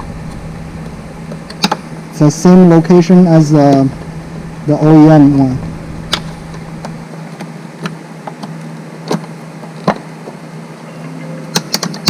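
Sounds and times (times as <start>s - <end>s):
steady low hum: 0.0s - 9.6s.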